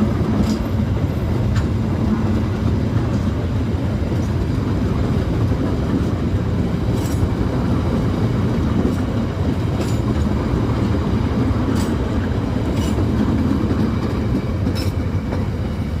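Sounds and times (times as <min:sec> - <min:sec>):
train rumbling past: 0:00.0 - 0:16.0
wheel clicks over rail joint: 0:08.8 - 0:10.4, 0:11.5 - 0:15.5.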